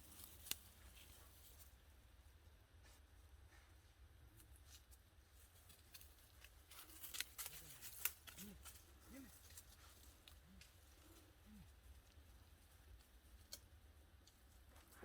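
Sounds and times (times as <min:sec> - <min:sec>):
twigs snapping: 0:00.1 - 0:00.8, 0:05.7 - 0:08.8, 0:13.0 - 0:14.4
footsteps crackling dry leaves: 0:05.6 - 0:10.0.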